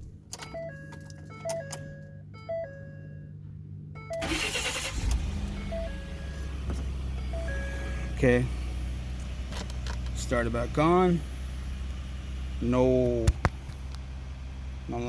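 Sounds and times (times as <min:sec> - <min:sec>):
truck engine idling: 0:00.0 - 0:15.0
dashboard warning chime: 0:00.3 - 0:03.4, 0:04.0 - 0:08.5.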